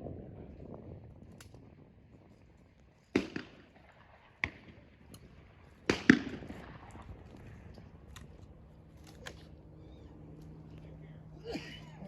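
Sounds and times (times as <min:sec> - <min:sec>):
shotgun shots with echo: 0:03.1 - 0:04.9, 0:05.8 - 0:07.1.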